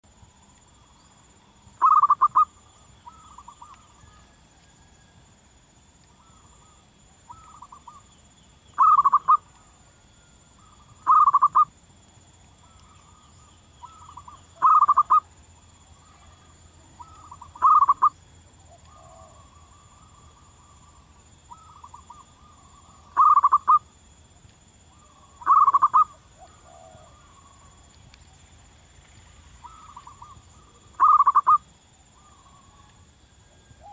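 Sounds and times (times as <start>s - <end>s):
dove cooing: 1.8s - 2.5s, 8.8s - 9.4s, 10.6s - 11.7s, 13.8s - 15.2s, 17.0s - 18.1s, 21.5s - 23.8s, 25.0s - 27.6s, 29.6s - 31.6s.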